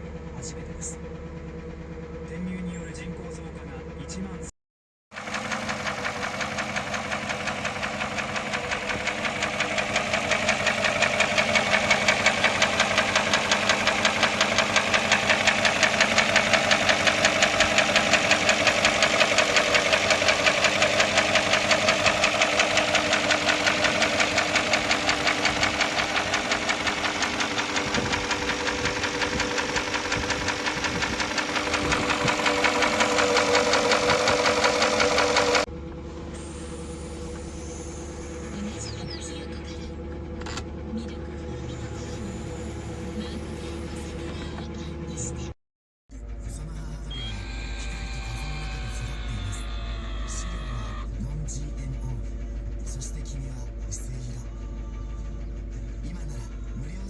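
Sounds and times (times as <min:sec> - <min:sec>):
engine knocking tick: 0:05.1 - 0:35.7.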